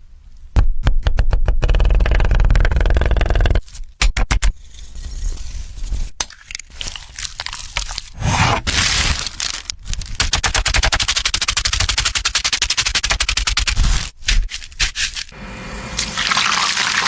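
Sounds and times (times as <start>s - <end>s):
scraping: 8.0s - 10.2s.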